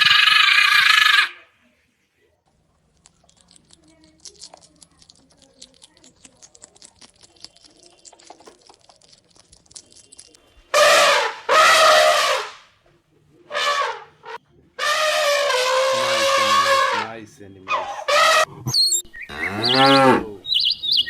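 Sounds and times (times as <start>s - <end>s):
animal calling loudly: 0.0s - 1.5s, 10.7s - 12.7s, 13.5s - 21.0s
faint clicking and rustling: 2.4s - 10.7s.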